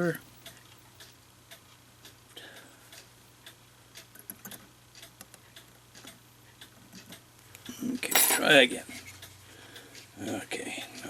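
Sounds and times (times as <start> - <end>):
mechanical clock ticking: 0.0 - 11.0
steady low hum: 0.0 - 11.0.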